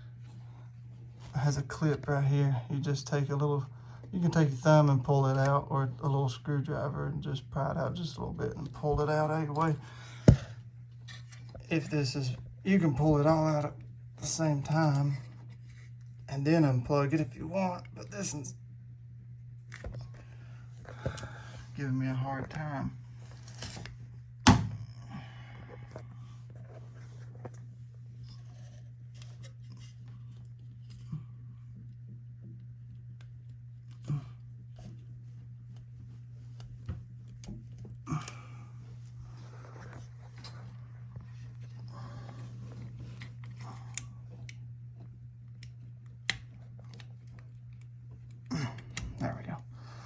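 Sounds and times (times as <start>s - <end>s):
steady low hum: 0.0s - 50.0s.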